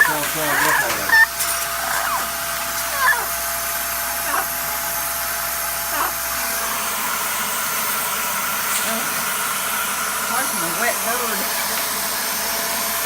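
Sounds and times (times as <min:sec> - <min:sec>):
vacuum cleaner running: 0:00.0 - 0:13.0.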